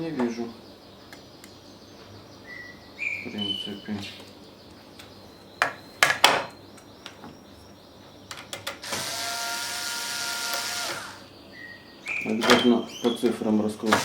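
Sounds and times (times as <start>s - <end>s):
electric screwdriver running: 8.8s - 11.2s.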